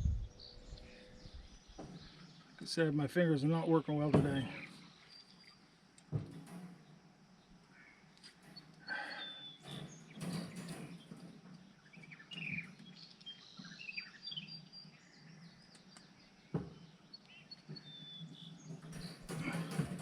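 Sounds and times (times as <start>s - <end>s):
small birds chirping: 0.0s - 20.0s
wire-mesh cage panels rattling: 6.1s - 7.2s, 8.3s - 13.2s, 18.4s - 20.0s.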